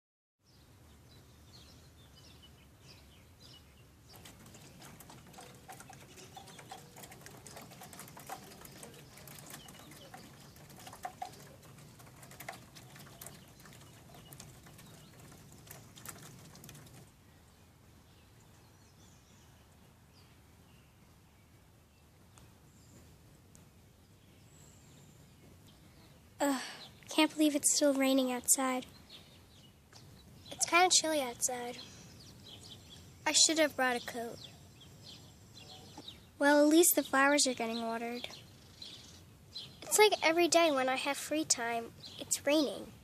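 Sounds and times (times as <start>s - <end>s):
raindrops pattering: 4.1s - 17.2s, 26.4s - 29.3s, 29.9s - 43.0s.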